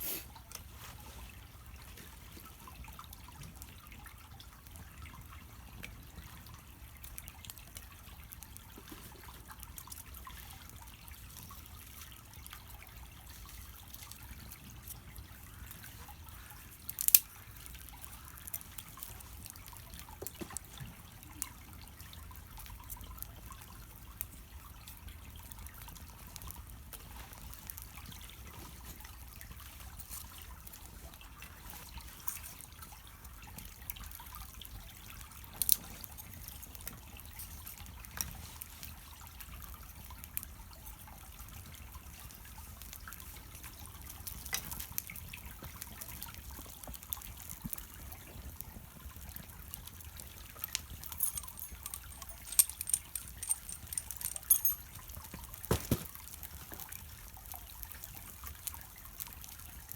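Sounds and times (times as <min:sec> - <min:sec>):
fire popping and crackling: 0:16.7 - 0:24.1, 0:41.6 - 0:59.9.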